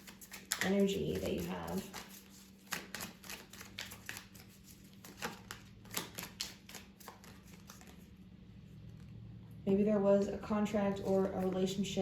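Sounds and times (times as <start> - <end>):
cards being shuffled: 0.0 - 8.1.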